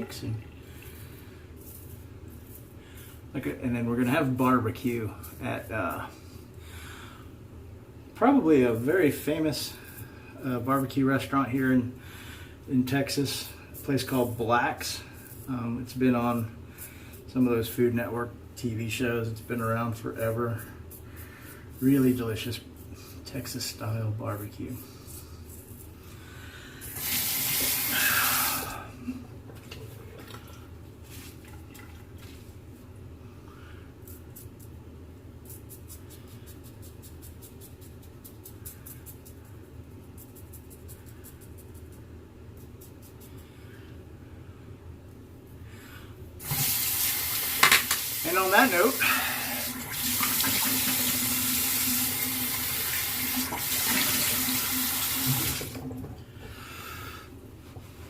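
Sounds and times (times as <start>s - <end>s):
sink tap running: 27.0s - 28.6s, 46.4s - 48.8s, 49.5s - 56.1s.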